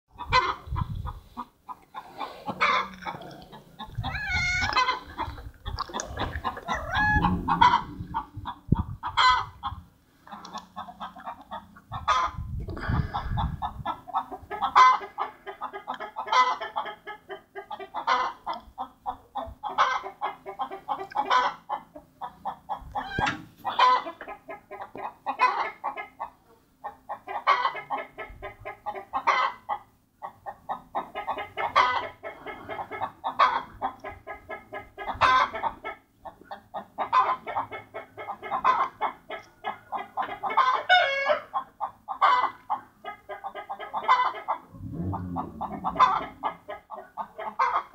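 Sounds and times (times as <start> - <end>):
short animal calls: 44.1 - 46.6.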